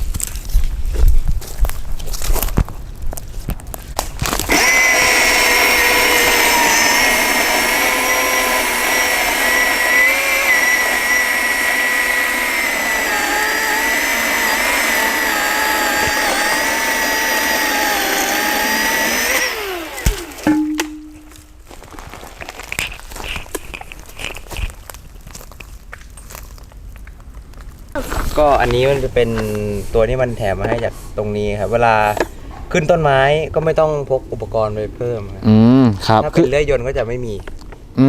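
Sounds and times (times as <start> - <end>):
battery chainsaw motor whine: 4.1 - 20.5.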